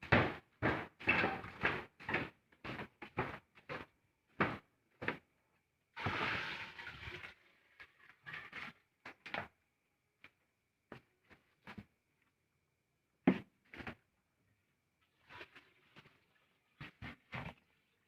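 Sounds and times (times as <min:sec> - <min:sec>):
irregular knocks and clatters: 0:00.0 - 0:05.2.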